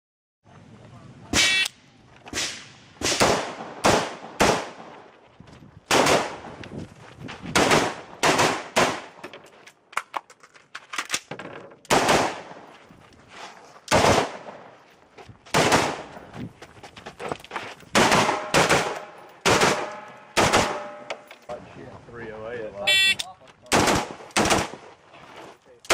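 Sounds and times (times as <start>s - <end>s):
rifle shots echoing: 2.3s - 5.0s, 5.9s - 6.5s, 7.6s - 9.2s, 11.9s - 12.7s, 13.9s - 14.7s, 15.5s - 16.1s, 17.9s - 21.1s, 22.9s - 24.8s.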